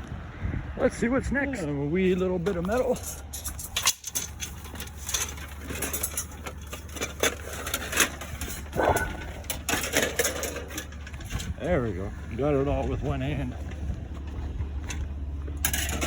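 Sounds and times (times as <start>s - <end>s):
scrap metal knocking and clinking: 2.4s - 11.5s, 15.6s - 16.0s
low steady hum: 2.4s - 16.0s.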